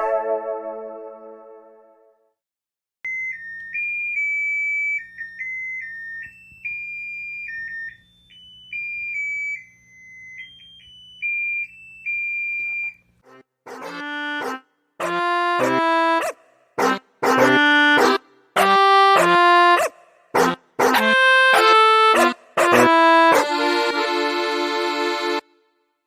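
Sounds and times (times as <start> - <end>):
simple electronic melody: 0.0 - 2.1, 13.3 - 19.8, 20.4 - 25.9.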